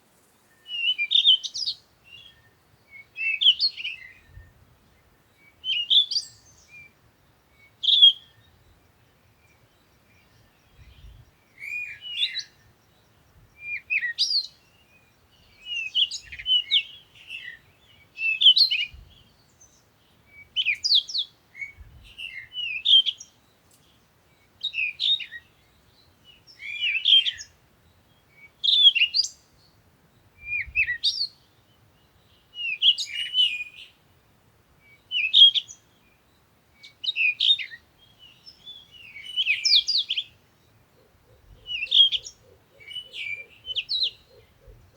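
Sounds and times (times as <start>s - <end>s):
birds chirping: 34.8s - 44.9s.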